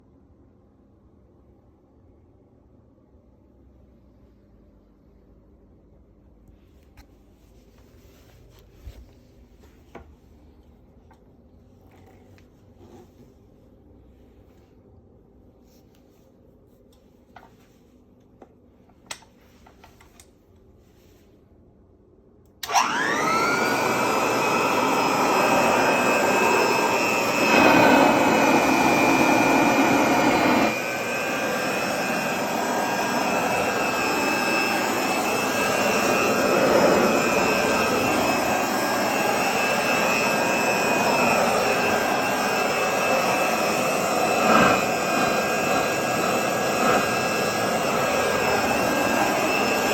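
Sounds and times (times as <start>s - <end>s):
vacuum cleaner clicks: 22.6s - 25.4s
vacuum cleaner motor whining: 22.6s - 49.9s.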